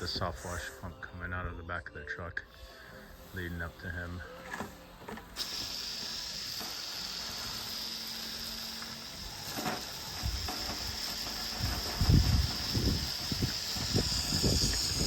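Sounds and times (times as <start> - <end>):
hose nozzle spraying water: 3.2 - 15.0
wind buffeting microphone: 11.5 - 15.0.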